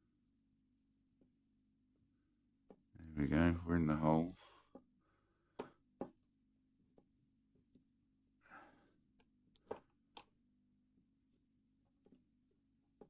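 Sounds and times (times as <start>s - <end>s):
person breathing out: 8.4s - 8.9s.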